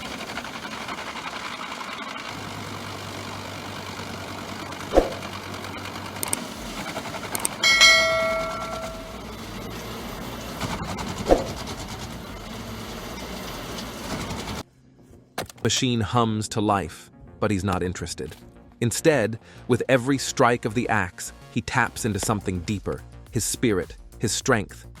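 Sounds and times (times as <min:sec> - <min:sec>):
machine running: 0:00.0 - 0:14.6
short metallic ring: 0:07.6 - 0:09.2.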